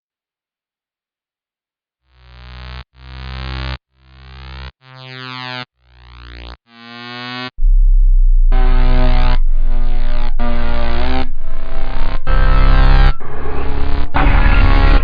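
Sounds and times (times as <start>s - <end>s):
deep bass note: 7.6s - 15.0s
swelling synthesizer notes: 7.6s - 15.0s.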